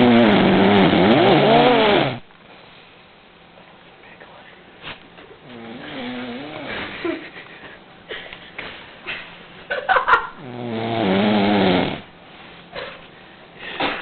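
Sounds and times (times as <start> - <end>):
man snoring: 0.0 - 2.2, 5.4 - 6.9, 10.4 - 12.1.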